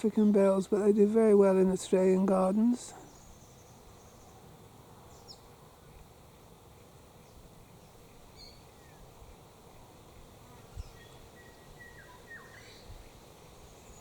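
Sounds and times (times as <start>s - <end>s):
faint bird chirps: 7.2s - 9.1s, 10.7s - 14.0s.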